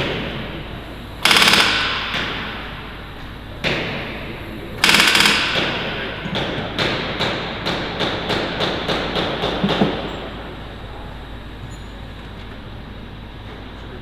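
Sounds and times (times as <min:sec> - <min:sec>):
pneumatic rivet gun rattling: 0:01.2 - 0:02.8, 0:04.8 - 0:06.0.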